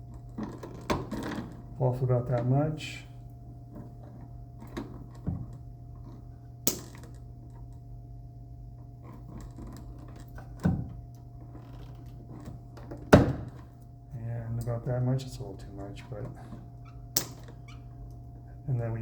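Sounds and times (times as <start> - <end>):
steady low hum: 0.0 - 19.0
wire strippers clicking and snapping: 17.1 - 18.2.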